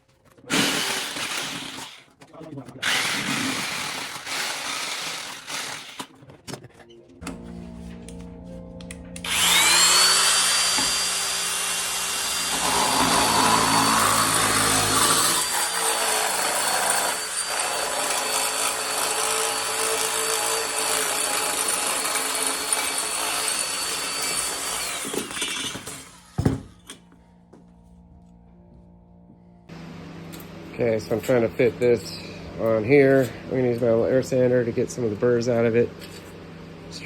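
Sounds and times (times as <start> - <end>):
power tool whining on sheet metal: 2.8 - 6.2, 9.2 - 27.0.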